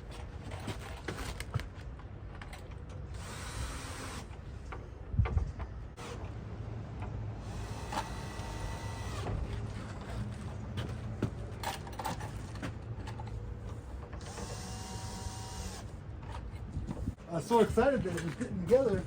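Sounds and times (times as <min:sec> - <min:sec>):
cordless drill driving screws: 0:07.5 - 0:09.3, 0:14.2 - 0:15.9.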